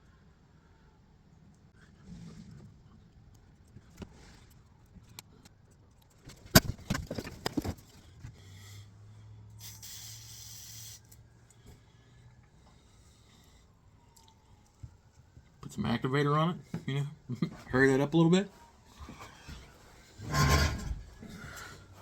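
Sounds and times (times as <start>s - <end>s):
hiss: 9.6s - 11.1s.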